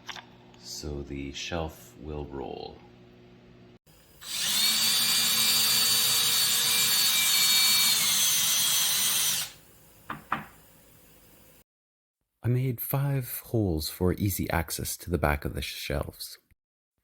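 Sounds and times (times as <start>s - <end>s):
power drill whining: 4.2s - 9.6s.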